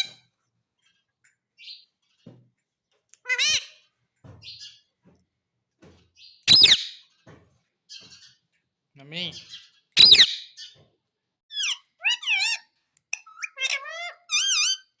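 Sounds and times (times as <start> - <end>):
parrot calling and squawking: 3.2 - 3.9, 6.5 - 7.0, 9.0 - 10.7, 11.5 - 15.0.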